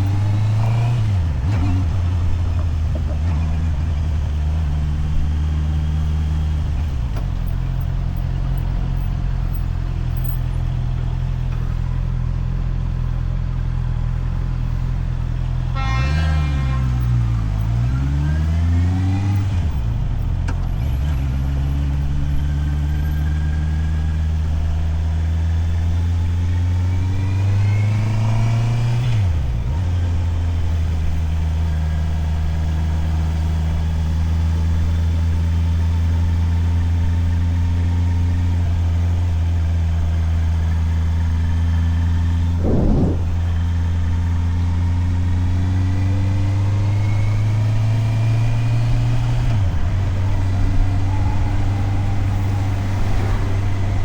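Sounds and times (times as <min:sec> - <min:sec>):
motorcycle engine accelerating: 0:00.0 - 0:54.0.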